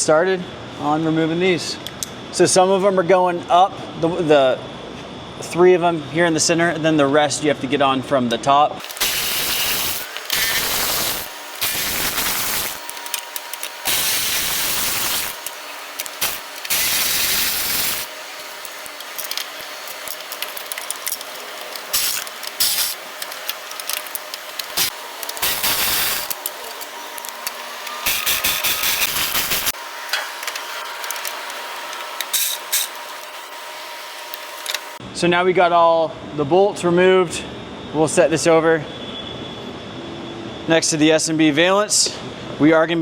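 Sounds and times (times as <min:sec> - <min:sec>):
socket tool whirring and clicking: 0:08.8 - 0:35.0.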